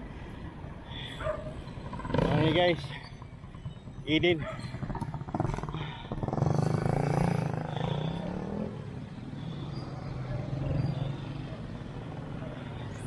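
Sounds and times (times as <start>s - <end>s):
motorcycle engine running: 1.8s - 8.8s.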